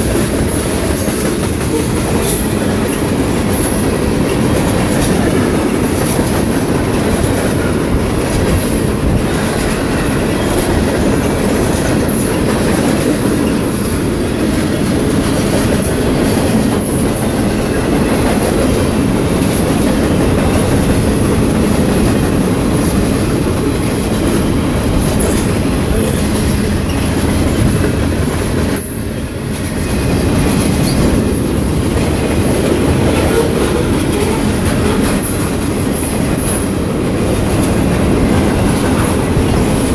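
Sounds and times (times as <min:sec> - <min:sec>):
freight train rumbling past: 0:00.0 - 0:39.9.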